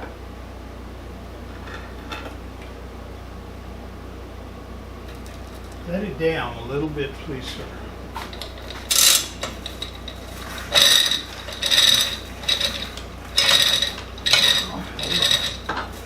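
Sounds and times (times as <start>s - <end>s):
hoist ratcheting with metallic ring: 8.3s - 15.8s.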